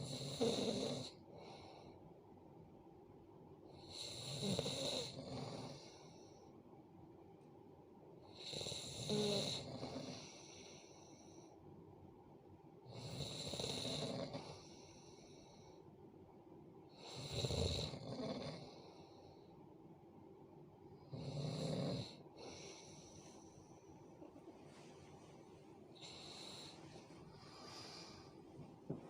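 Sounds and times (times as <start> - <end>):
person snoring: 0.0 - 1.6, 3.8 - 6.1, 8.3 - 10.8, 12.9 - 14.8, 17.0 - 19.0, 21.1 - 23.2, 26.0 - 28.4
quiet breathing: 0.0 - 2.6, 3.6 - 6.8, 8.2 - 11.9, 12.8 - 19.9, 20.8 - 29.0.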